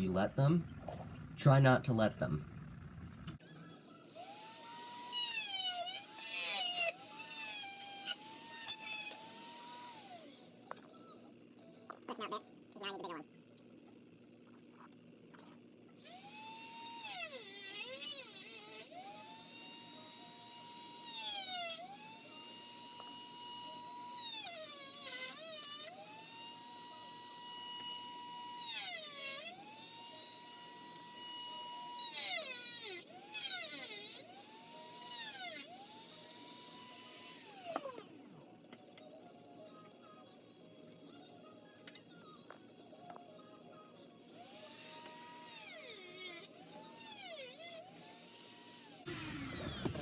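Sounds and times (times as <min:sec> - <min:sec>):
rotary tool grinding plastic: 0:02.5 - 0:11.4, 0:14.5 - 0:38.4, 0:44.2 - 0:50.0
rotary tool whining: 0:02.5 - 0:11.9, 0:15.4 - 0:50.0.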